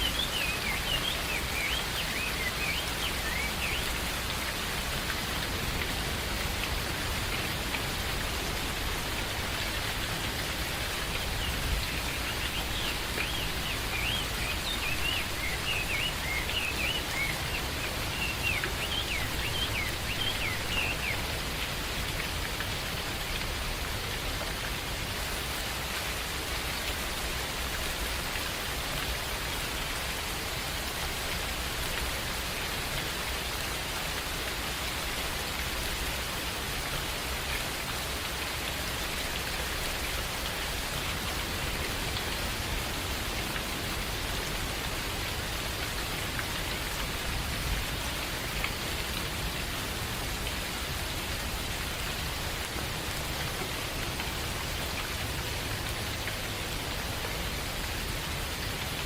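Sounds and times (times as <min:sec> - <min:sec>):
steady rain: 0:00.0 - 0:59.0
bird chirping: 0:11.2 - 0:21.2.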